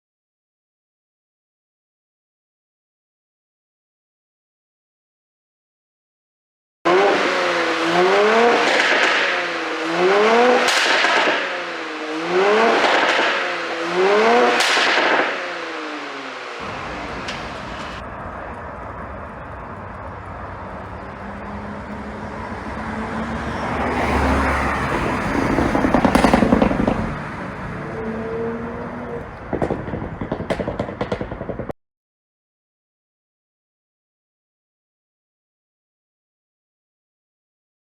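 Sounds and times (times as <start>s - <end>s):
exhaust cracks: 6.9s - 28.0s, 28.8s - 31.8s
car engine revving: 6.9s - 31.3s.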